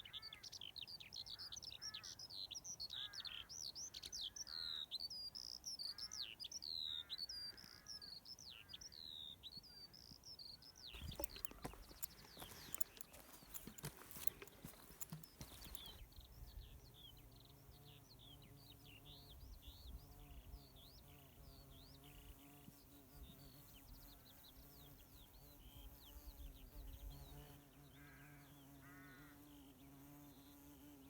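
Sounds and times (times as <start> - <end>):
birds chirping and whistling: 11.0 - 16.0.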